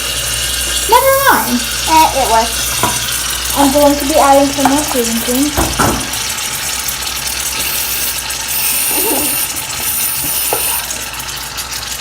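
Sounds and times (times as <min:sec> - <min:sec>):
aerosol can hissing: 0:07.4 - 0:11.1.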